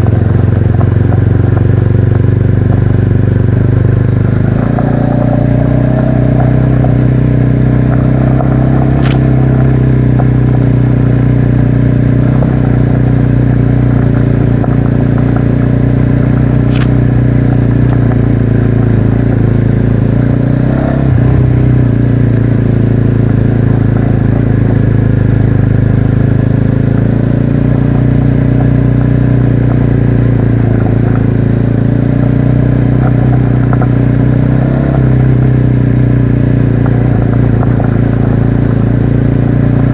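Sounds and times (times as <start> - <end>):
motorcycle engine running: 0.0 - 39.9
sharp clicks: 8.9 - 9.4, 16.5 - 16.9.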